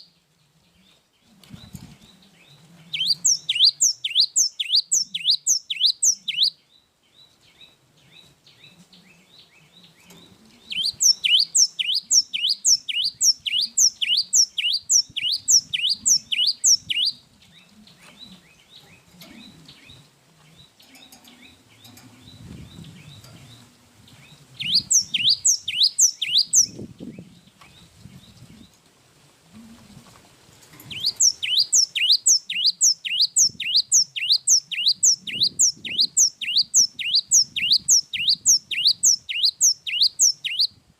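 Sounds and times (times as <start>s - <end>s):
faint background noise: 0.0s - 40.9s
bird singing high whistled notes: 2.4s - 6.6s, 10.6s - 17.2s, 24.2s - 28.6s, 30.9s - 40.8s.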